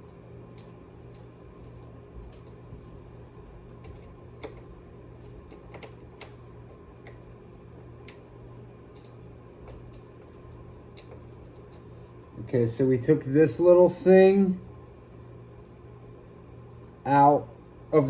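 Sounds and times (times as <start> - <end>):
steady low hum: 0.0 - 18.0
screwdriver clicks and taps: 3.8 - 4.7, 5.4 - 6.4.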